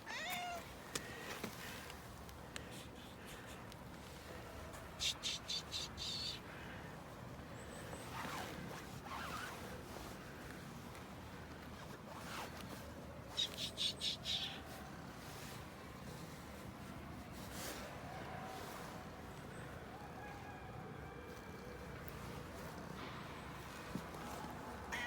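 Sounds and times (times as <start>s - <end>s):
faint bird calls: 2.6s - 6.8s, 13.3s - 15.0s.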